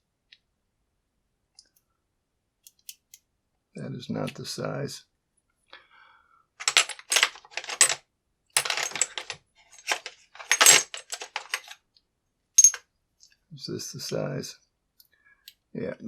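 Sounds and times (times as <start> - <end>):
small metal tools clinking: 6.6 - 8.0, 8.6 - 11.8, 12.6 - 12.8.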